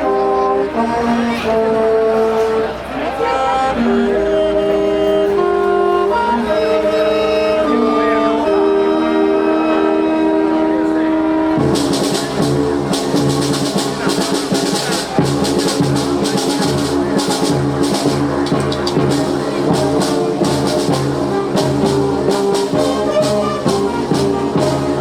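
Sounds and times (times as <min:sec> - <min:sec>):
band playing music: 0:00.0 - 0:02.9, 0:03.7 - 0:25.0
quick steady percussion: 0:11.6 - 0:25.0.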